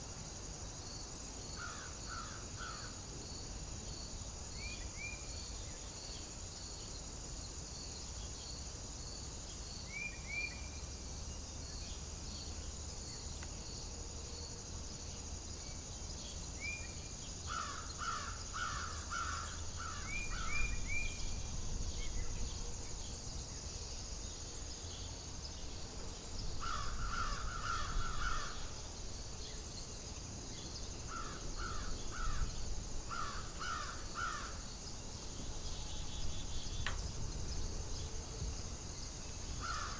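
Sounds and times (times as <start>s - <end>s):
high insect trill: 0.0s - 39.9s
low wind rumble: 18.6s - 39.9s.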